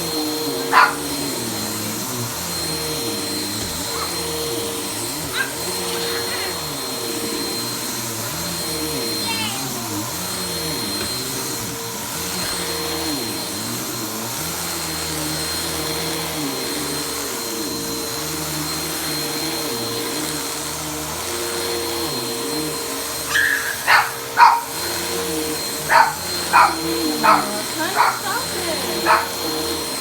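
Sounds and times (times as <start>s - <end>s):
vacuum cleaner running: 0.0s - 30.0s
dog barking: 0.5s - 1.3s, 3.8s - 4.2s, 5.2s - 6.6s, 23.3s - 25.0s, 25.8s - 29.6s.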